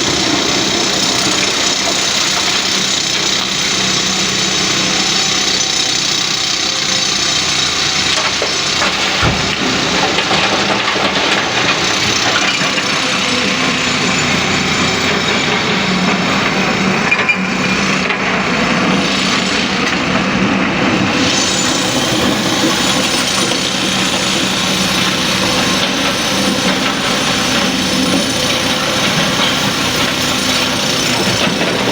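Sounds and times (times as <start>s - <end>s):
excavator engine under load: 0.0s - 31.9s
rocks grinding and clattering: 7.9s - 31.9s.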